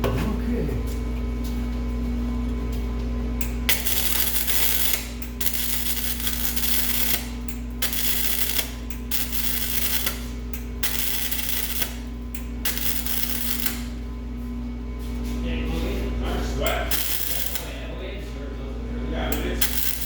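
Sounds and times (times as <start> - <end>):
steady low hum: 0.0 - 20.0
arc welder crackling: 3.4 - 14.2, 16.2 - 18.2, 19.0 - 20.0.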